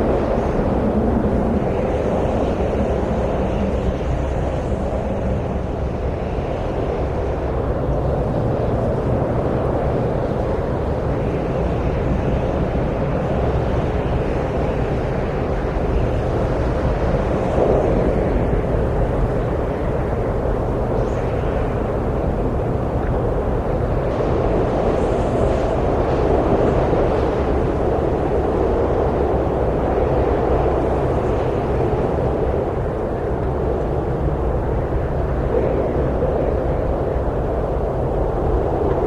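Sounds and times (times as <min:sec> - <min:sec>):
desert wind rushing: 0:00.0 - 0:39.0.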